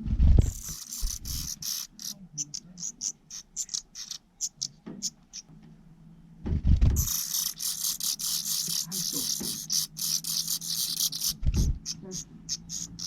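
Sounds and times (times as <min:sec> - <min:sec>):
nestling birds begging calls: 0:00.5 - 0:05.6, 0:07.0 - 0:13.0
low thump: 0:06.4 - 0:07.0.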